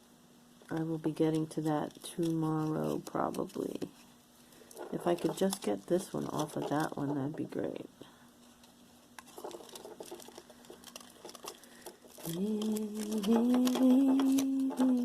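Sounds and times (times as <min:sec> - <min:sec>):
woman humming: 0:12.2 - 0:15.0.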